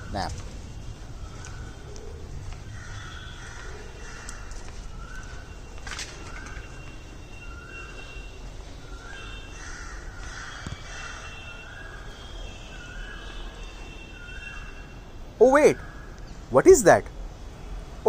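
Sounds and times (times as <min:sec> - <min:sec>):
steady background noise: 0:00.0 - 0:18.0
crows cawing: 0:01.2 - 0:05.5, 0:08.9 - 0:12.0.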